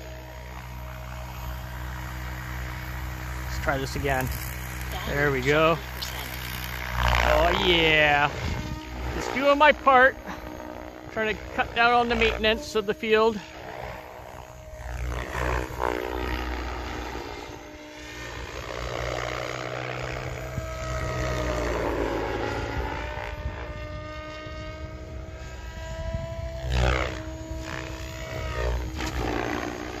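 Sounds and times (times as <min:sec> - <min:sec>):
rc helicopter motor whine: 0:00.0 - 0:30.0
rotor blades chopping grass: 0:26.7 - 0:30.0.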